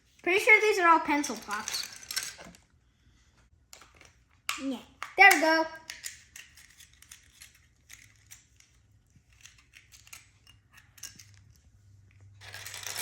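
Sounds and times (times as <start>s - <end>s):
plastic toy pieces clicking: 3.8s - 11.5s.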